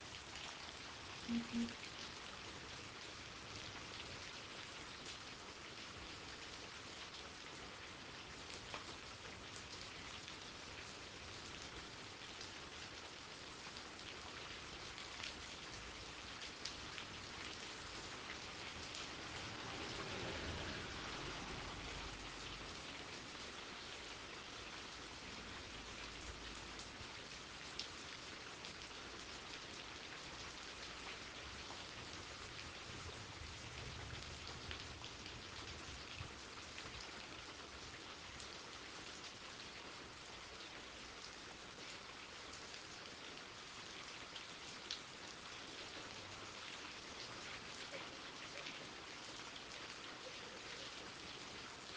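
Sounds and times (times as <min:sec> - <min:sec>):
steady rain hiss: 0:00.0 - 0:51.9
sharp drips: 0:01.3 - 0:01.8.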